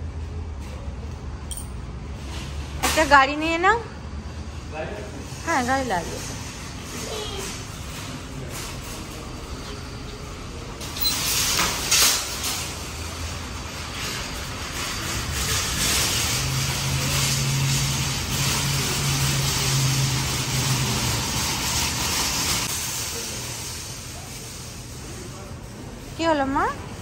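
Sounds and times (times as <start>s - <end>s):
tyre hiss on wet pavement: 15.1s - 25.5s.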